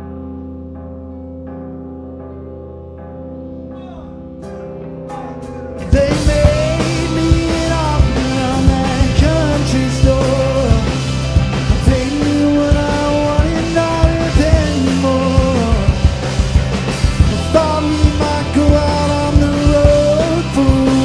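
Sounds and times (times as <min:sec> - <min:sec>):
live rock band instrumental: 0:00.0 - 0:21.0.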